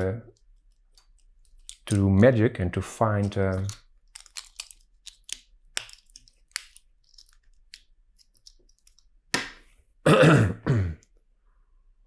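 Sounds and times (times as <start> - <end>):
plastic bricks clicking: 0.3 - 2.0, 3.2 - 9.6
plastic bricks clattering: 3.2 - 9.1.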